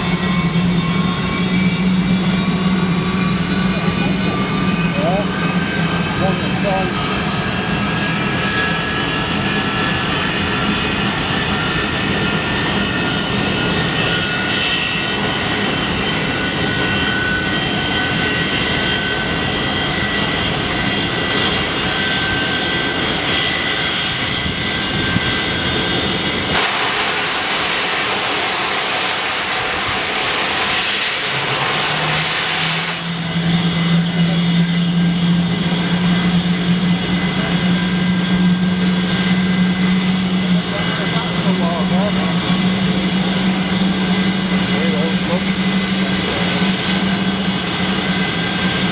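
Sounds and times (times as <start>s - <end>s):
jet engines whining: 0.0s - 48.9s
rushing noise: 23.9s - 36.9s.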